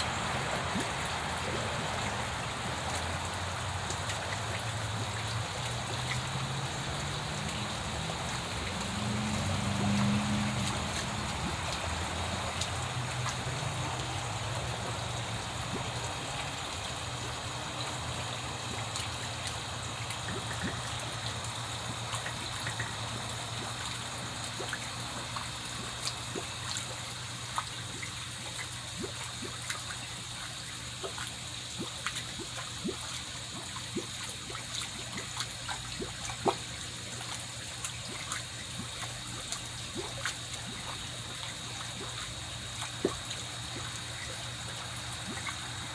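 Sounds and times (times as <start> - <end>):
water trickling into pond: 0.0 - 45.9
fish feeding pops and clicks: 23.6 - 45.9.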